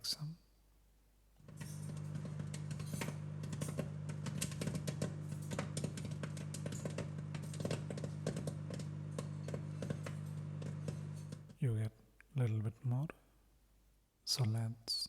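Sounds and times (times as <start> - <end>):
microwave oven humming: 1.4 - 11.5
popcorn popping: 1.4 - 11.6.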